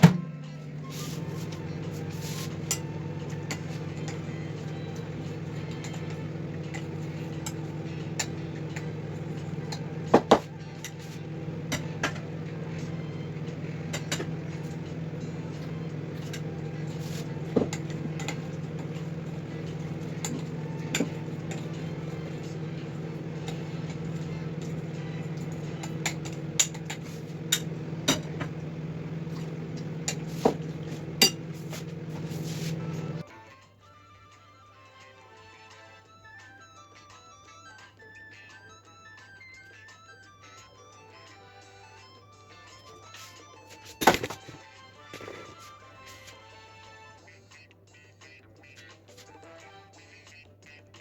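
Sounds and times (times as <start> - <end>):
mechanical hum: 0.0 - 33.3
dishes and utensils clattering: 22.5 - 33.2.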